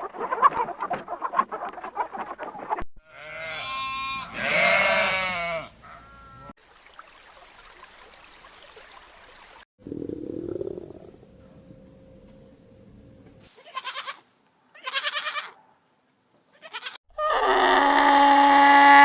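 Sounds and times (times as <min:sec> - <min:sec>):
loud drawn-out bleat: 0:03.0 - 0:06.5, 0:13.6 - 0:14.2, 0:14.8 - 0:15.6, 0:16.6 - 0:19.0
faint hiss: 0:13.4 - 0:15.0.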